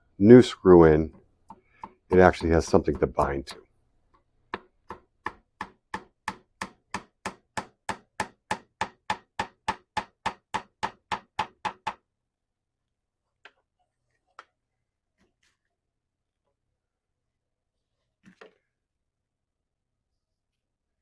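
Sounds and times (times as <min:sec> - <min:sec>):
hammer tapping dowel into wood: 0:01.1 - 0:12.0.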